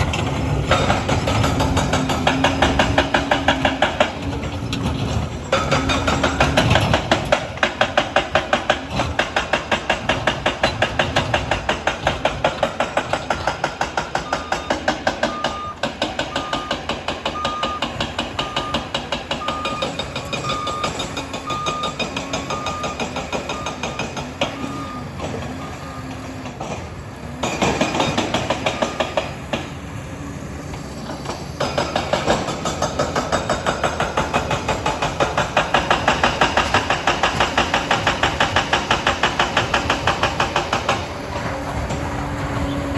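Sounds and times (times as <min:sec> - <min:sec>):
dozer engine running: 0:00.0 - 0:42.9
steel tracks clattering: 0:00.0 - 0:42.9
reversing alarm beeping: 0:13.1 - 0:26.5.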